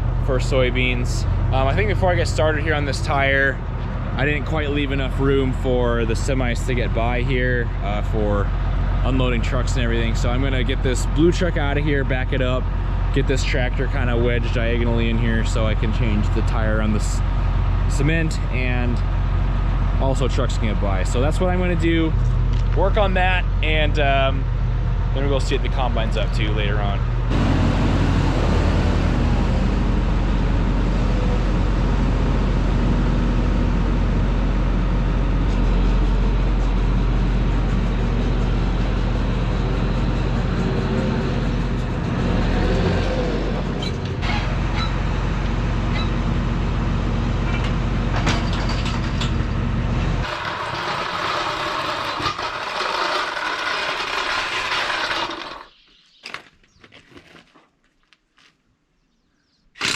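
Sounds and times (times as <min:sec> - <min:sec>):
truck engine running: 0:00.0 - 0:55.6.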